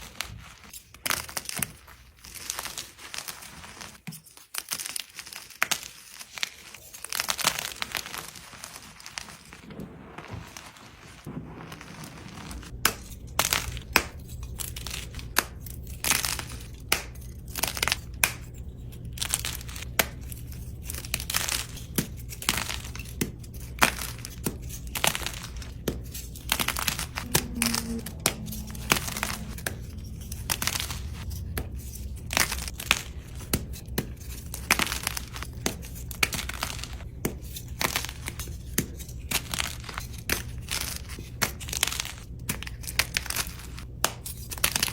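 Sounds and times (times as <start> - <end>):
low hum: 26.3 - 33.5.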